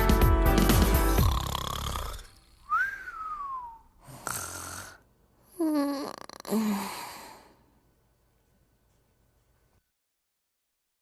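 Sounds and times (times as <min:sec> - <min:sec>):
comic exaggerated snoring: 0:01.1 - 0:02.6, 0:04.0 - 0:07.1
whistling tone: 0:02.6 - 0:03.9.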